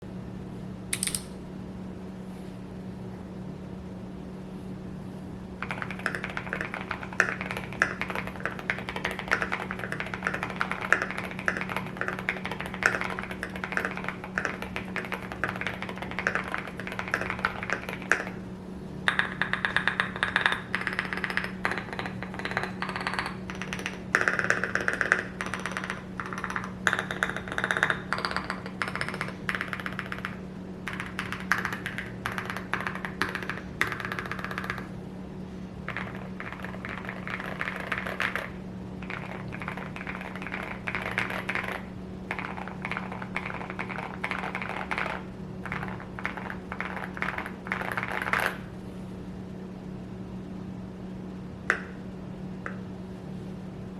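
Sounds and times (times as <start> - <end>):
steady low hum: 0.0 - 53.9
mechanical keyboard typing: 5.6 - 18.4, 19.1 - 34.9, 35.9 - 48.6.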